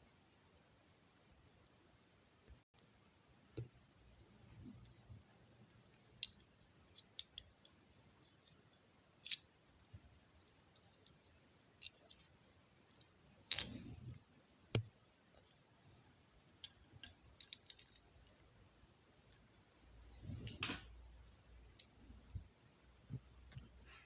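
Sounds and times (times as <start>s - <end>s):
plastic bricks clicking: 6.2s - 7.8s.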